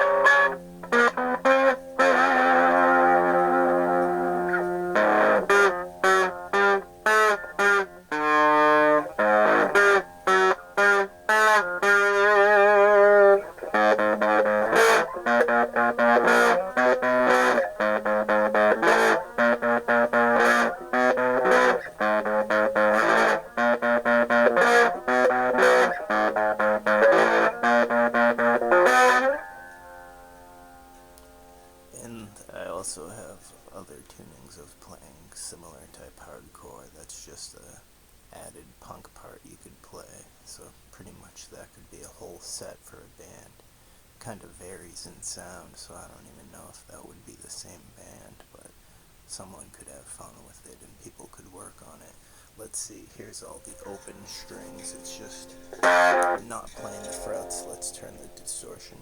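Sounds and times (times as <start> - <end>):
distorted electric guitar riff: 0.0 - 34.6, 52.2 - 59.0.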